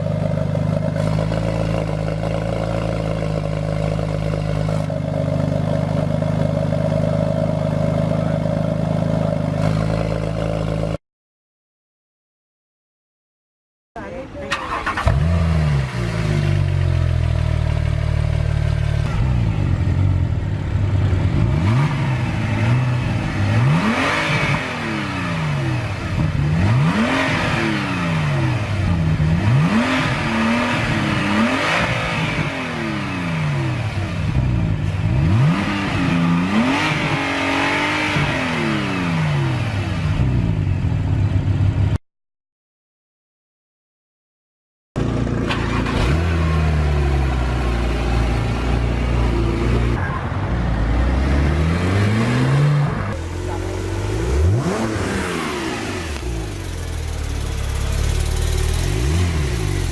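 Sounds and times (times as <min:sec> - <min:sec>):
car engine idling: 0:00.0 - 0:11.0, 0:14.0 - 0:23.9, 0:52.9 - 0:59.9
car engine revving in blips: 0:21.2 - 0:40.3, 0:45.0 - 0:50.1, 0:50.8 - 0:59.9.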